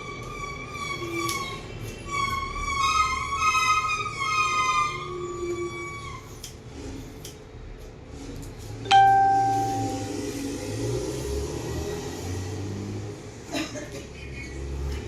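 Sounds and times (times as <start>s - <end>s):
bell-like chime ringing: 8.9s - 10.6s.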